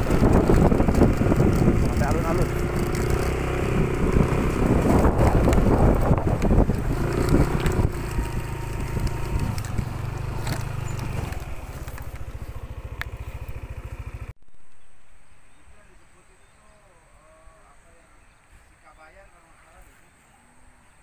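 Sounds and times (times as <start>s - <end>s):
engine running with low throb: 0.0s - 15.2s.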